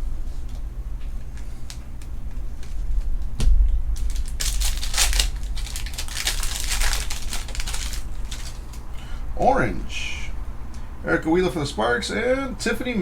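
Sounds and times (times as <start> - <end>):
foil pack tearing and crinkling: 3.9 - 8.9.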